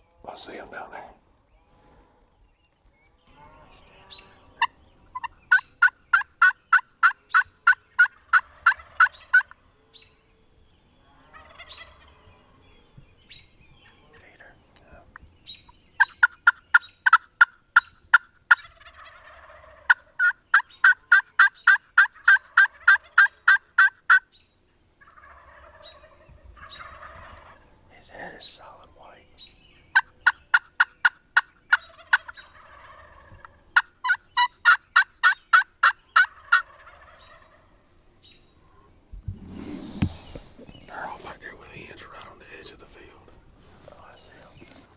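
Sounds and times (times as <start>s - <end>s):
rough turkey sounds: 0.2s - 10.2s, 11.1s - 12.5s, 13.2s - 44.9s
turkey yelping: 4.3s - 10.1s, 11.3s - 12.1s, 15.5s - 24.4s, 25.0s - 27.8s, 29.4s - 38.4s.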